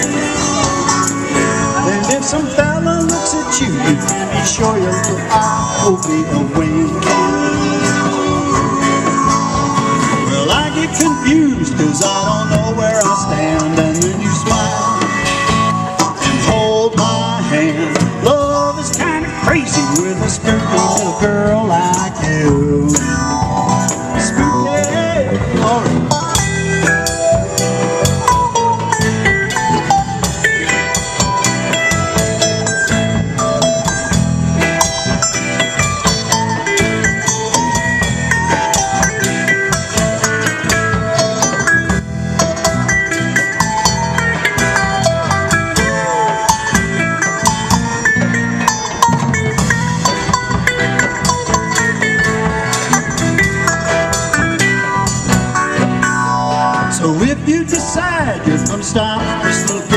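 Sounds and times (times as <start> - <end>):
lead guitar: 0.0 - 59.9
live band playing: 0.0 - 59.9
steady drum beat: 0.0 - 59.9.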